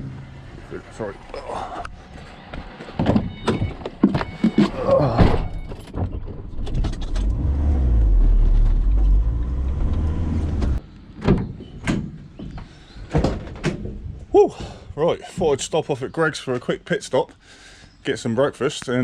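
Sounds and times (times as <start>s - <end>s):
vehicle engine rumbling: 0.0s - 13.0s
knocks and clattering: 9.8s - 14.1s.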